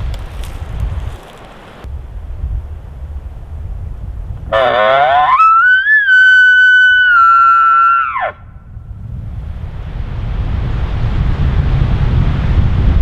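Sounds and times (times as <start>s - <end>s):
elk bugling: 4.4s - 8.5s.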